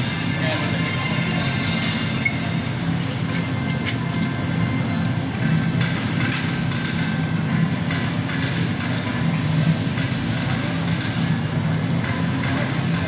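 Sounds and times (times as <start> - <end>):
thin high whine: 0.0 - 4.3
freezer refrigeration hum: 0.0 - 13.0.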